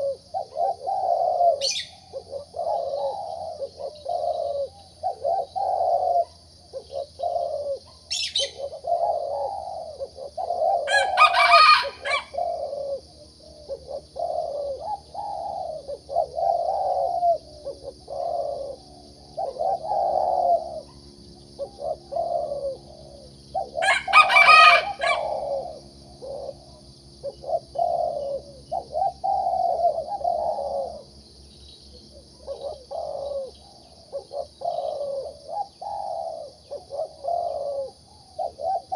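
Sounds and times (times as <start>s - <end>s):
shrill bird calls: 0.0s - 18.8s, 19.4s - 26.6s
dove cooing: 0.0s - 31.2s, 31.9s - 38.9s.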